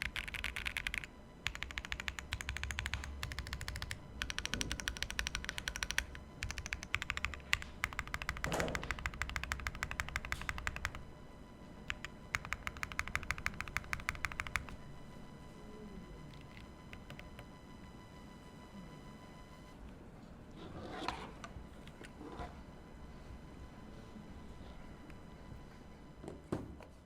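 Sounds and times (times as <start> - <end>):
fast mechanical keyboard typing: 0.0 - 11.0, 11.9 - 14.8, 16.3 - 17.4.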